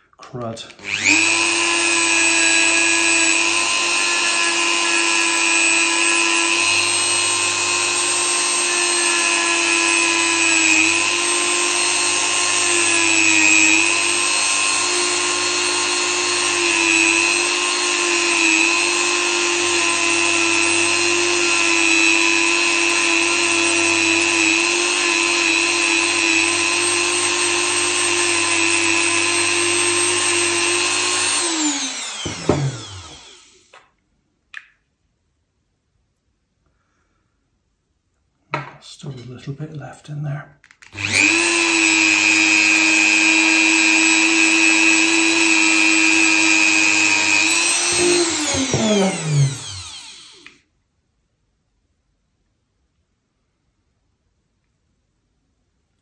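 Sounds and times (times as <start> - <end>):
rotary tool whining: 0.8 - 33.7, 40.8 - 50.6.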